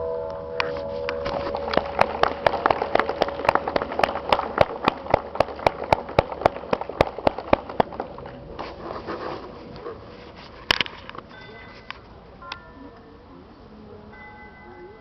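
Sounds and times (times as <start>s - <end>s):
audience clapping: 1.1s - 8.5s.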